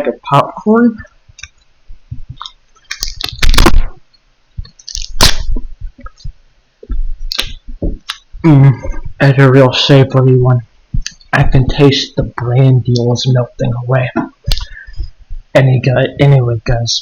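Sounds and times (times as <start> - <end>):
person chewing crackly paper: 2.3 - 3.8, 4.6 - 6.3.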